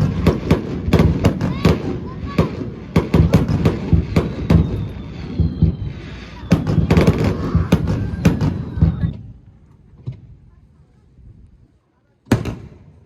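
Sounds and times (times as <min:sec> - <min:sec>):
fireworks bangs: 0:00.0 - 0:10.6, 0:12.3 - 0:13.0
high firework whistle: 0:01.1 - 0:09.4.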